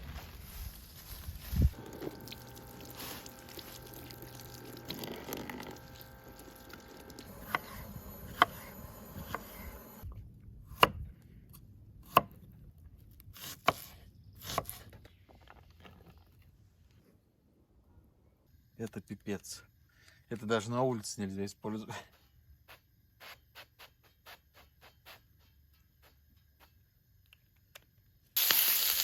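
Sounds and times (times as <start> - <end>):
low steady hum: 0.0 - 10.7.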